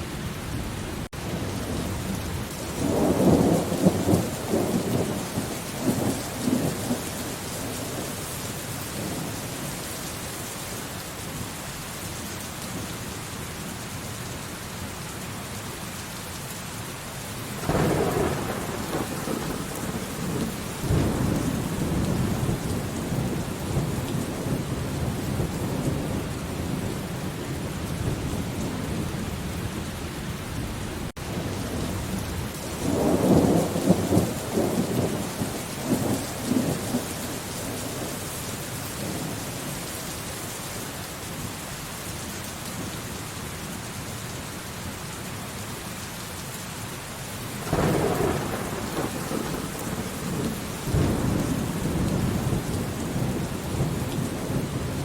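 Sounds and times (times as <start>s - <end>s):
steady rain falling: 0.0s - 55.0s
thunder rumbling: 0.5s - 8.1s, 17.6s - 38.2s, 47.6s - 55.0s.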